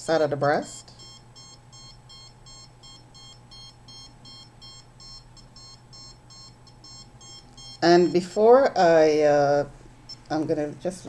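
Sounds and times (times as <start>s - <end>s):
high-pitched meter beeping: 0.6s - 8.8s.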